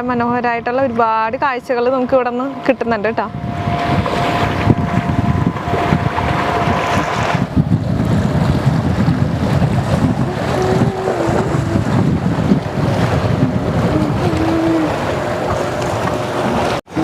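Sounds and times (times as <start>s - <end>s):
boat engine running: 0.0s - 17.0s
wind buffeting microphone: 0.0s - 17.0s
waves washing against breakwater: 3.2s - 17.0s.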